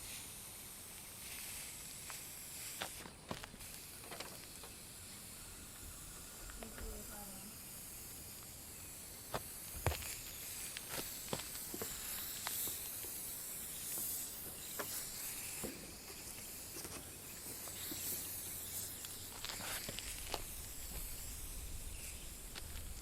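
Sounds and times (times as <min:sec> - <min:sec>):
high insect drone: 0:00.0 - 0:23.0.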